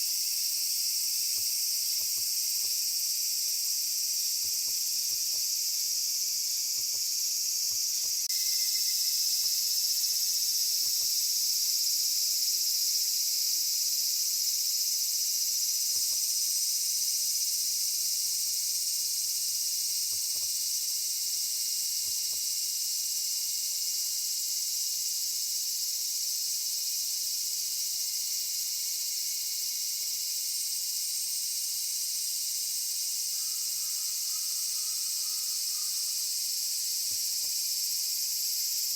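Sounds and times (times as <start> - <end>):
high-pitched insect chorus: 0.0 - 38.9.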